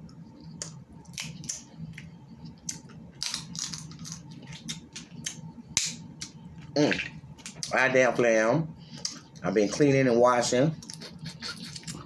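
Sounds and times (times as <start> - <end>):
crab shells cracking: 2.7 - 6.3.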